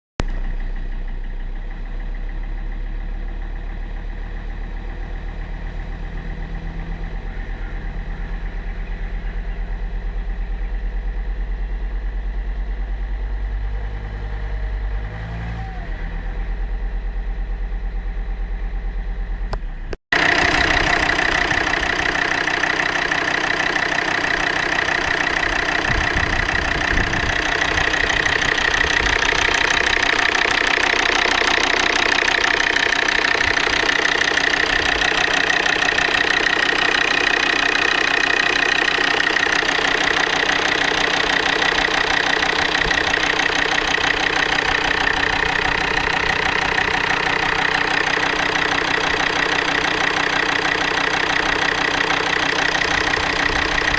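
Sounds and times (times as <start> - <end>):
diesel engine idling with clatter: 0.2 - 53.9.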